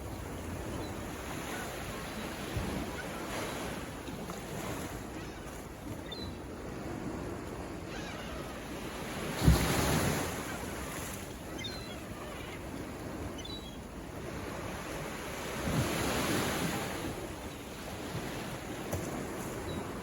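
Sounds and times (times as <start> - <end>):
waves crashing on shore: 0.0 - 20.0.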